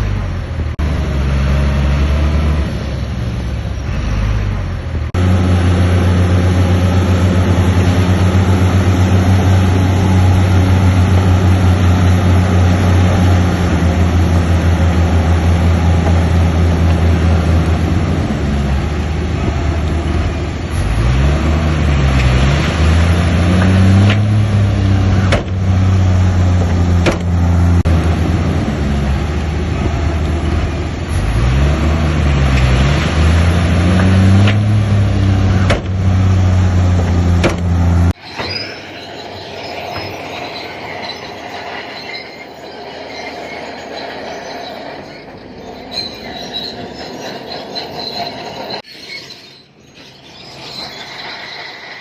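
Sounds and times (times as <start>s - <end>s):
bulldozer diesel engine running: 0.0s - 52.0s
sharp metal clanks: 37.4s - 52.0s.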